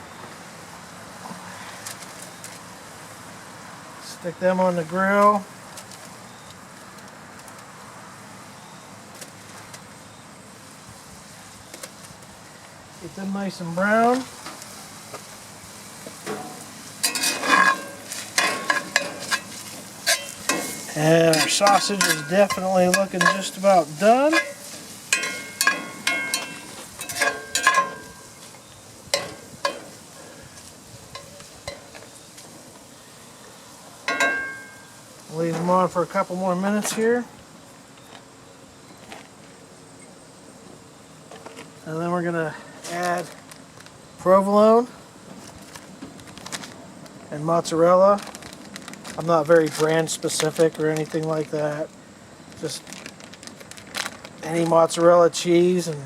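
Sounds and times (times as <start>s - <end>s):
sausage sizzling in a pan: 13.5s - 35.5s.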